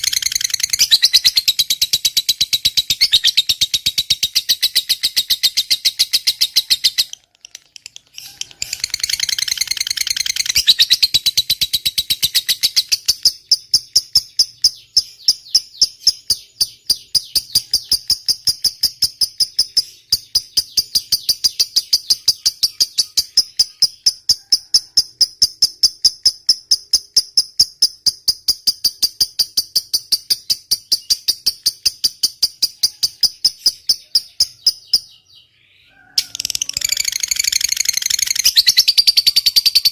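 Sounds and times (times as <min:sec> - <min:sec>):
lovebird chattering chirps: 0:00.0 - 0:39.9.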